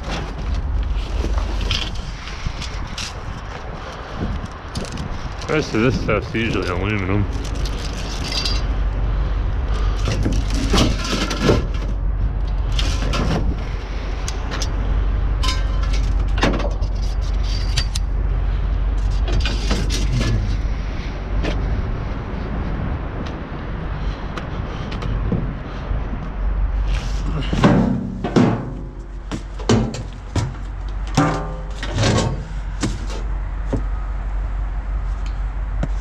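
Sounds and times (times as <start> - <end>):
scrap metal clanking and rattling: 0.0 - 3.6, 7.3 - 8.8, 9.7 - 13.7, 15.4 - 18.1, 19.0 - 20.6, 27.0 - 33.3
steady low rumble: 0.0 - 36.0.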